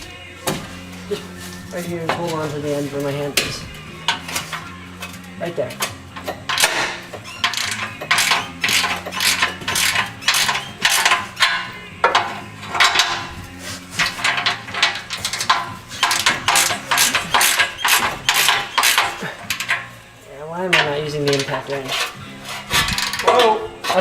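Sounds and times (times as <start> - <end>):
ratchet wrench clicking: 6.2 - 13.3, 13.9 - 19.9.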